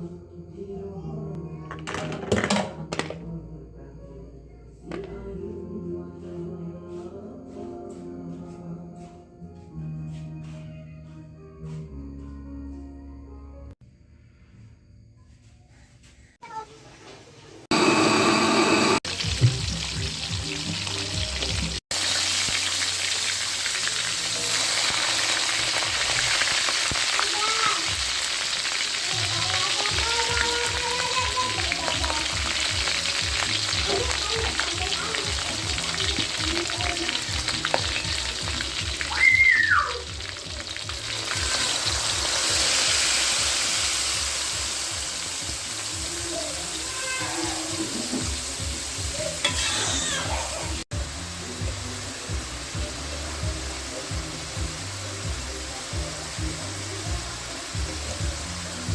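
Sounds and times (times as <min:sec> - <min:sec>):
chicken sizzling in hot oil: 0:17.7 - 0:58.9.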